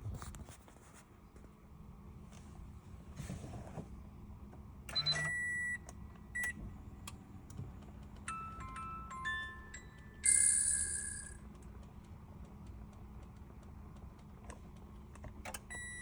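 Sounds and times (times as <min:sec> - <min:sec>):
electronic warning beeps: 0:15.6 - 0:16.0.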